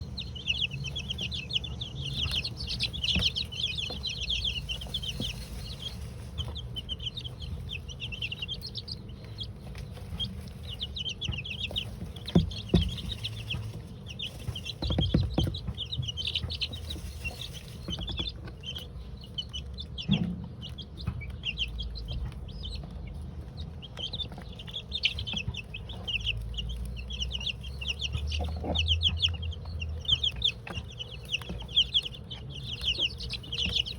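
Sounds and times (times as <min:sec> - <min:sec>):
chicks peeping: 0:00.0 - 0:33.9
dull knocks: 0:11.2 - 0:17.1.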